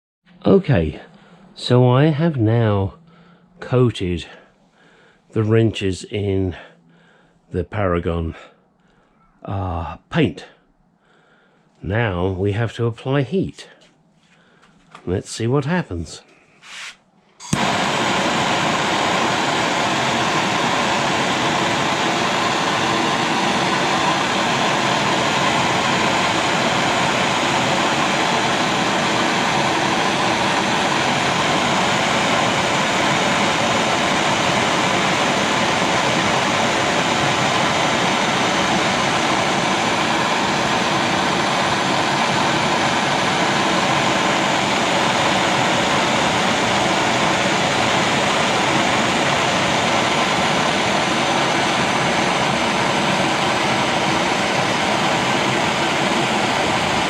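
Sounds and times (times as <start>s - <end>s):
gas torch flame hissing: 16.6s - 57.0s.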